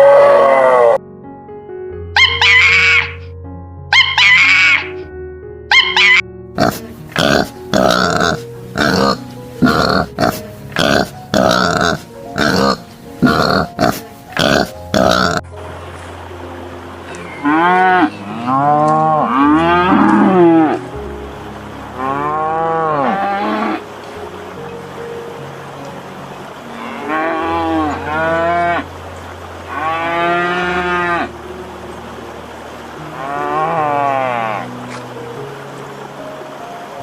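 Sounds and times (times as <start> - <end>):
faint background music: 0.0 - 37.0
cattle mooing: 5.9 - 15.4, 17.1 - 20.8, 22.0 - 23.8, 26.7 - 28.9, 29.7 - 31.3, 33.1 - 34.7
pigs grunting: 6.1 - 15.5.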